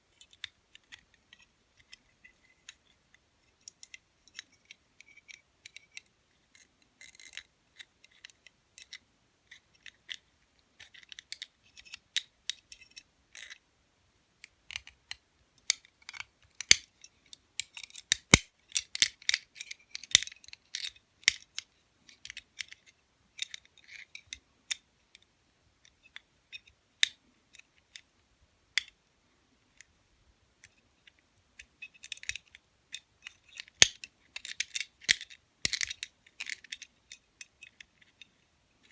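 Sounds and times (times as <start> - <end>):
lock pick clicking and scratching: 33.3 - 38.2.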